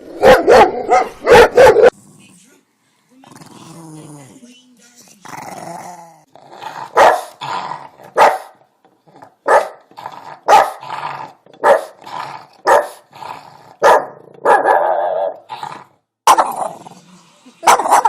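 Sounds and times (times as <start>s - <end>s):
dog barking: 0.2s - 1.9s, 6.9s - 7.4s, 8.1s - 8.6s, 9.4s - 9.8s, 10.5s - 10.8s, 11.6s - 12.0s, 12.6s - 13.0s, 13.8s - 15.4s, 16.3s - 16.6s, 17.6s - 18.0s.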